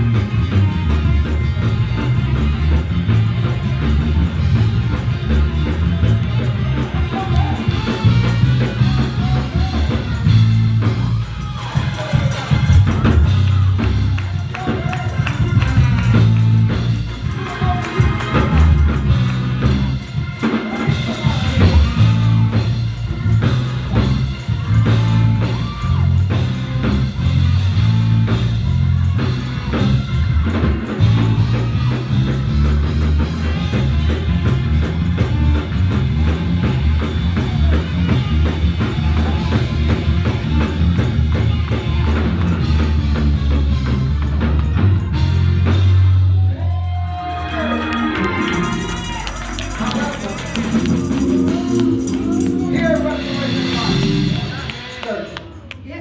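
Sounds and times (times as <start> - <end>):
drum kit: 0.0 - 46.3, 47.0 - 55.4
bass: 0.0 - 56.0
tambourine: 0.0 - 56.0
person singing: 48.2 - 54.8.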